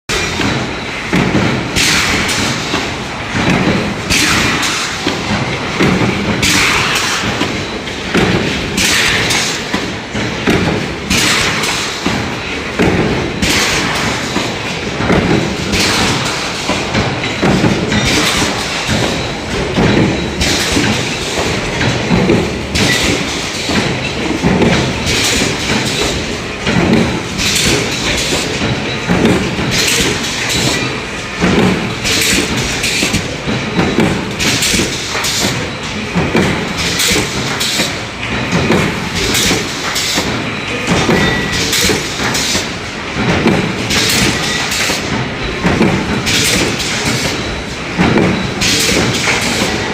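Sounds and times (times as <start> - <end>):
factory din: 0.1 - 49.9
punch press thumping: 0.1 - 49.9.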